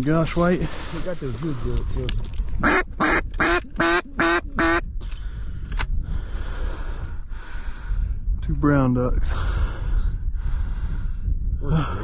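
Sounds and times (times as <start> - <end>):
duck quacking: 2.6 - 4.8.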